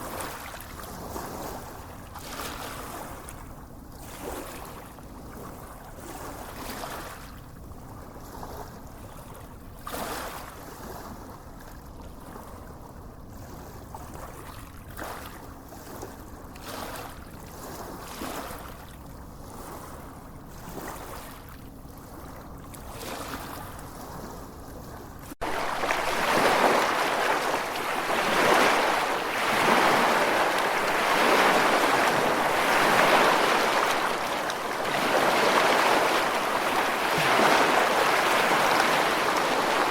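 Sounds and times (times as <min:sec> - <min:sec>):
small waves lapping on sand: 0:00.0 - 0:12.5, 0:13.3 - 0:39.9
surf rushing: 0:25.4 - 0:39.9.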